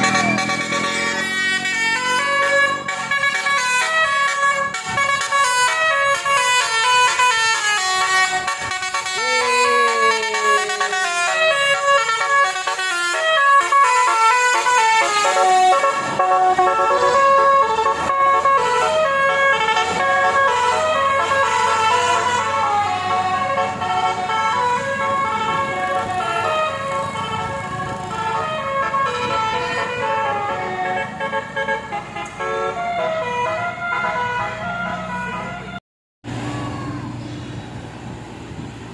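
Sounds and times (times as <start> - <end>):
musical car horns: 0.0 - 35.8
falling siren-like glide: 9.1 - 12.0.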